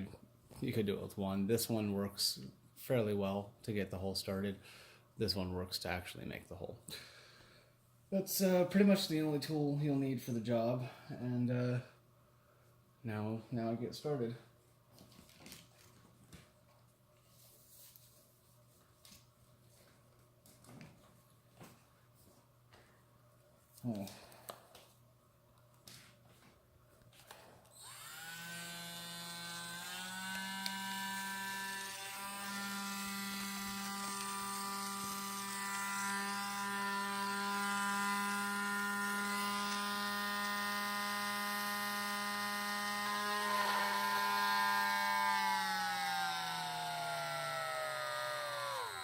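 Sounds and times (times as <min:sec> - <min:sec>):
rotary tool whining: 0:27.2 - 0:49.0.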